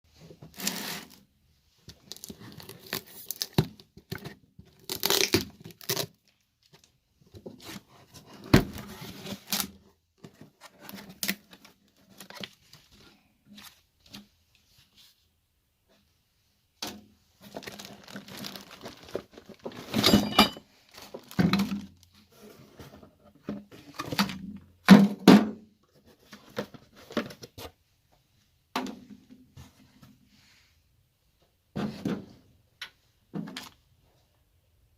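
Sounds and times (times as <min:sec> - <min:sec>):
metal tools clattering and scraping: 0:19.8 - 0:20.7.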